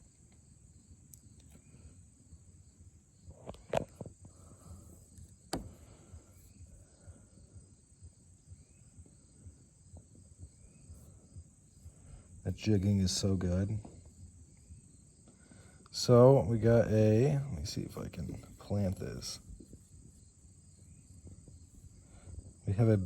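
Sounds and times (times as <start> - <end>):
crickets chirping: 0.0 - 23.0.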